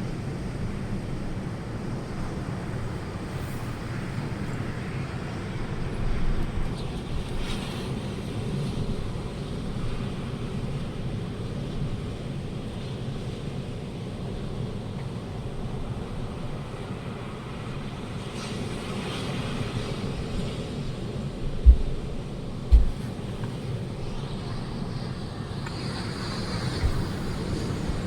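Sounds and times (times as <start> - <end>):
gusty wind on microphone: 21.4 - 28.0.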